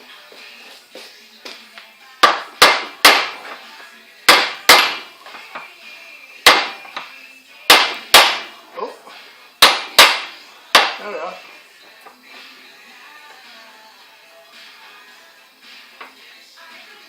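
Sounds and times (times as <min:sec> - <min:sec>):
hammer striking steel: 0:04.3 - 0:05.0, 0:07.7 - 0:08.5, 0:09.6 - 0:11.0.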